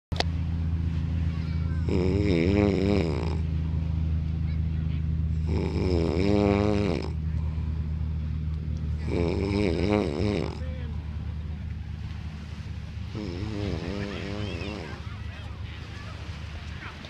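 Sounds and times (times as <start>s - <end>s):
steady low rumble: 0.1s - 17.0s
man snoring loudly: 1.8s - 3.4s, 5.4s - 7.2s, 9.0s - 10.6s, 13.1s - 15.0s.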